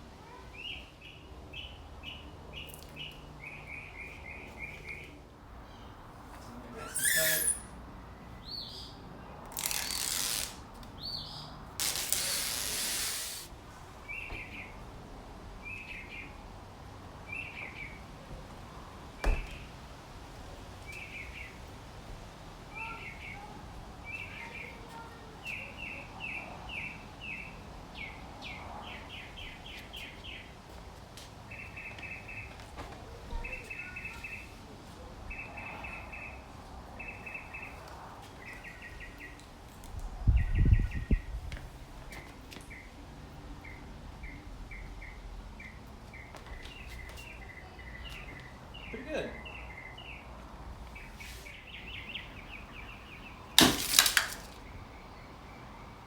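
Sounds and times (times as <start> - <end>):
outdoor background noise: 0.0 - 56.0
harsh rasping noises: 6.8 - 7.7, 11.8 - 13.5
songbird chirping and trilling: 22.7 - 30.5, 43.6 - 53.6.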